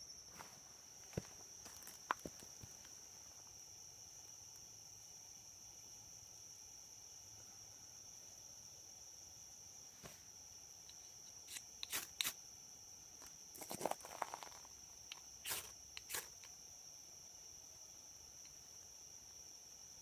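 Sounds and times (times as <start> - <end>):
insects droning: 0.0 - 20.0.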